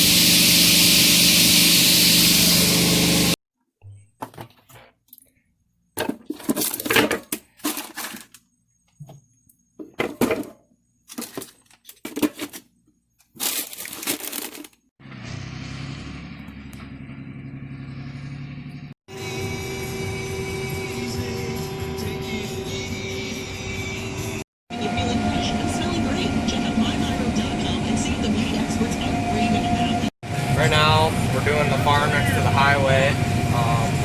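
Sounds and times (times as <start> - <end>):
engine running: 0.0 - 3.4, 15.0 - 34.0.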